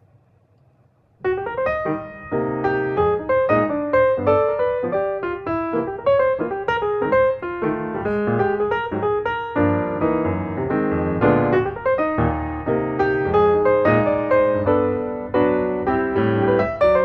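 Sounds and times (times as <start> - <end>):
piano music: 1.2 - 17.0.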